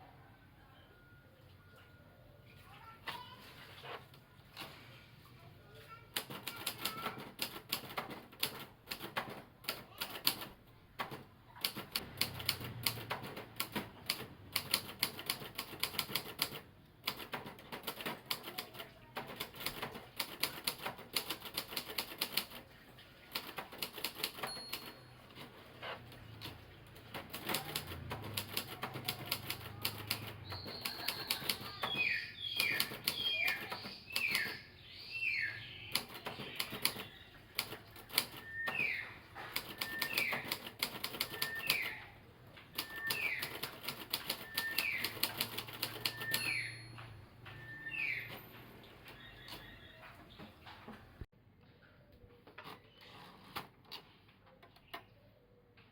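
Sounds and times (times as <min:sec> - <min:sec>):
typewriter keys clicking: 0:06.2 - 0:22.7, 0:23.3 - 0:34.6, 0:35.9 - 0:38.5, 0:39.5 - 0:42.0, 0:42.8 - 0:46.6.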